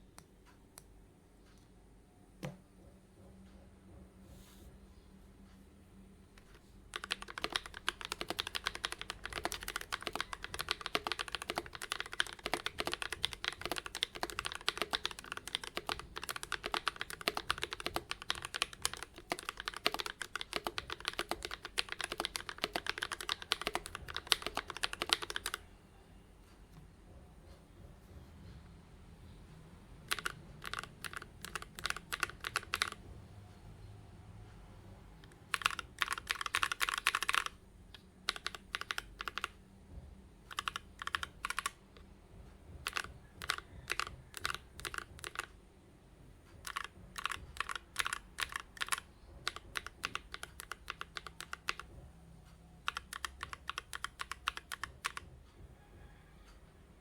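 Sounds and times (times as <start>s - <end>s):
mechanical keyboard keys clacking: 6.4s - 25.7s, 30.0s - 33.2s, 35.2s - 39.6s, 40.5s - 45.6s, 46.5s - 52.1s, 52.8s - 55.4s.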